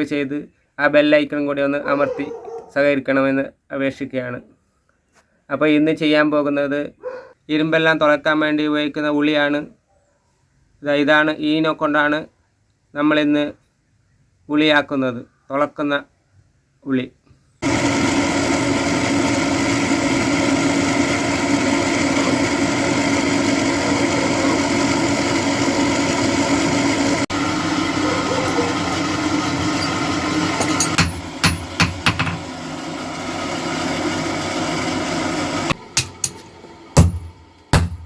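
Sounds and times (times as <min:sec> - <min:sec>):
workshop machine humming: 0:17.6 - 0:38.0
sharp knocks: 0:37.0 - 0:38.0.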